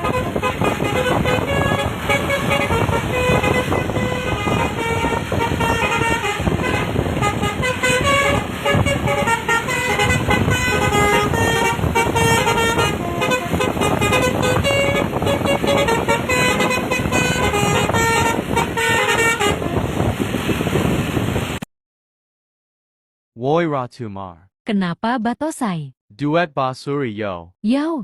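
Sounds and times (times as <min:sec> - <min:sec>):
bus horn playing melody: 0:00.0 - 0:20.7.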